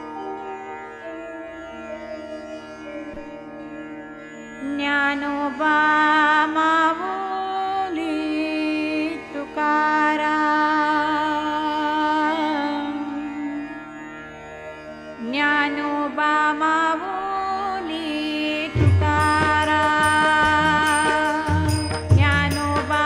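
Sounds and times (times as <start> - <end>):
woman singing devotional song: 4.6 - 13.9, 15.2 - 23.0.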